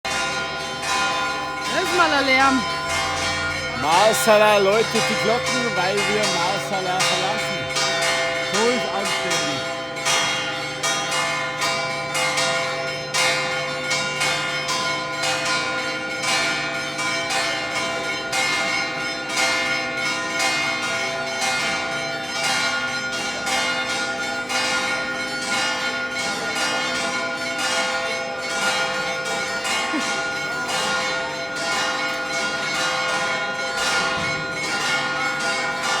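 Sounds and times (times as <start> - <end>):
church bells pealing: 0.0 - 36.0.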